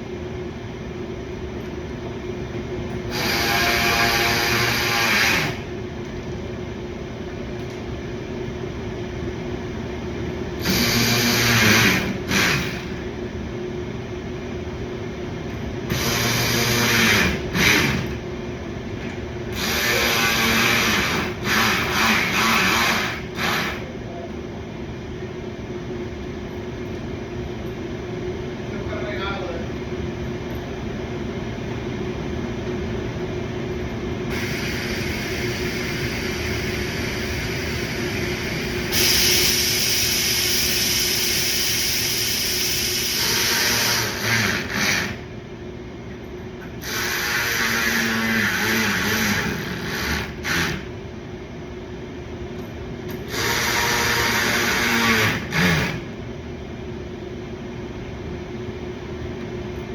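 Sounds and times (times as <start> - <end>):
steady shop hum: 0.0 - 59.9
power tool whirring: 3.1 - 5.7, 10.6 - 13.0, 15.9 - 18.2, 19.5 - 23.9, 42.4 - 45.2, 46.8 - 50.9, 53.1 - 56.2.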